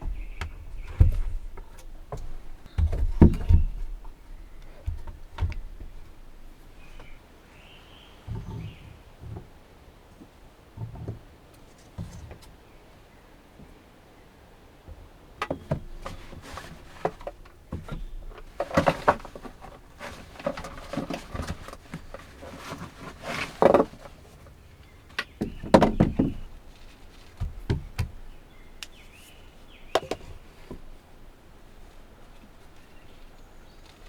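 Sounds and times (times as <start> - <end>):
objects being handled: 15.6 - 28.2.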